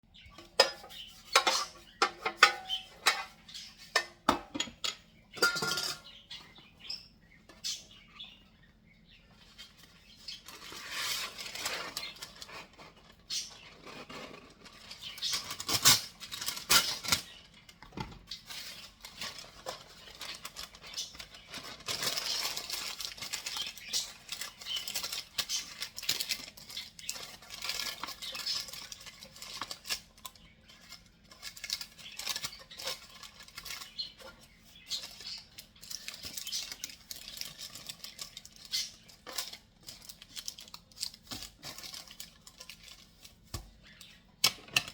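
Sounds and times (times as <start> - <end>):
utensils and dishes clinking: 0.4 - 6.3
scraping and rustling: 9.3 - 44.9.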